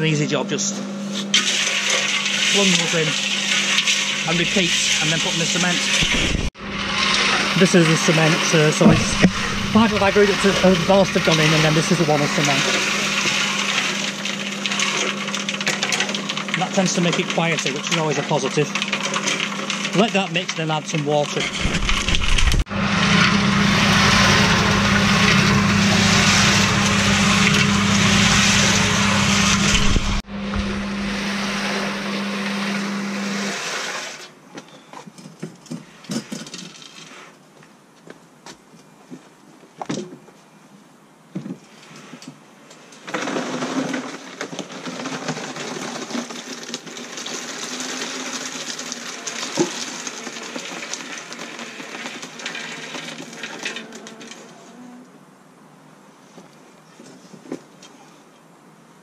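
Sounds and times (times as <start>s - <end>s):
concrete mixer running: 1.2s - 34.4s, 43.0s - 54.5s
steady noise: 4.3s - 12.9s, 21.5s - 31.5s.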